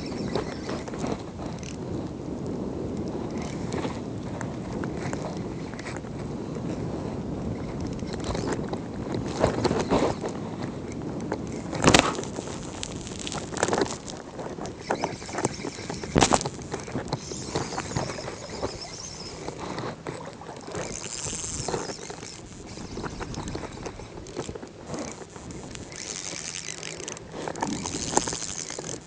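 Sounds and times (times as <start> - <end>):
gear rubbing on microphone: 0.0 - 1.7, 11.4 - 29.0.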